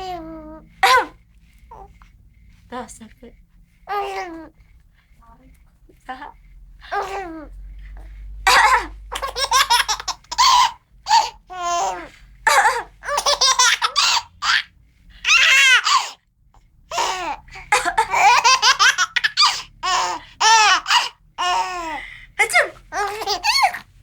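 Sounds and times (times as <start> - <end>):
baby laughing: 8.5 - 16.2, 16.9 - 23.8.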